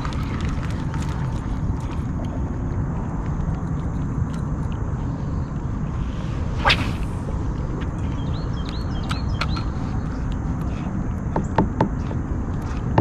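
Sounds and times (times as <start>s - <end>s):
wind rumble on microphone: 0.0s - 13.0s
fishing rod swishing through air: 5.8s - 7.8s.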